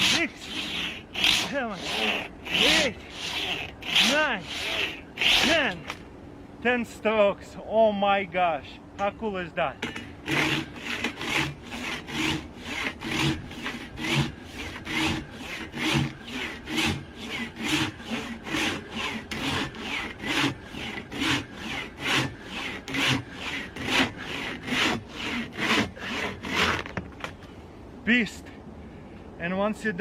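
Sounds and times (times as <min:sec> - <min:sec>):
hand saw rasping through wood: 0:00.0 - 0:06.0, 0:09.8 - 0:27.0.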